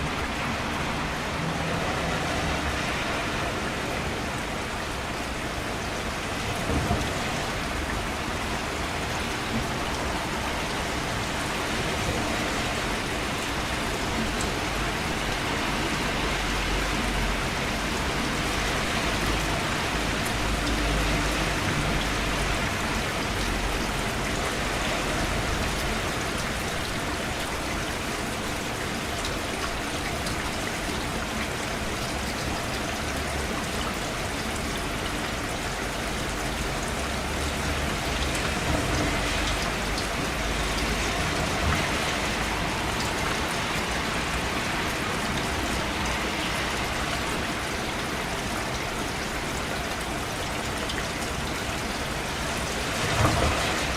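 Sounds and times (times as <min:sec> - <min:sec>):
rain pattering: 0:00.0 - 0:53.9.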